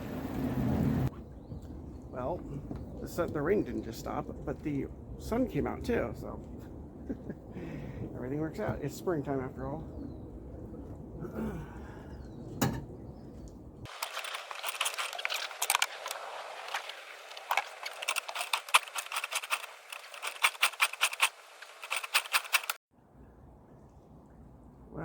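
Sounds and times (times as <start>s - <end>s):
outboard motor cranking: 13.9s - 22.8s.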